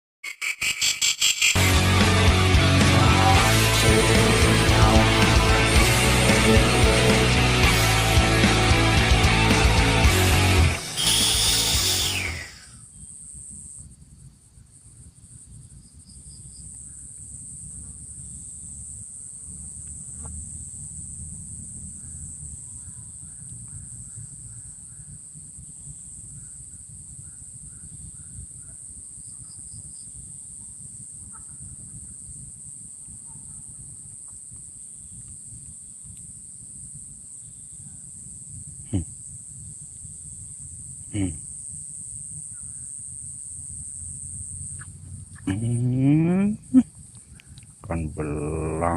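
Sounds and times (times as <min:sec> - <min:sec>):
quick chirps: 0:00.2 - 0:01.8, 0:09.5 - 0:12.8
insects droning: 0:00.2 - 0:48.9.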